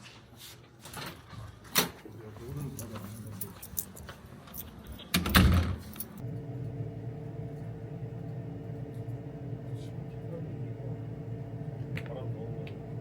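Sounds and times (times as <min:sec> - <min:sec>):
low machine hum: 0:05.9 - 0:13.0.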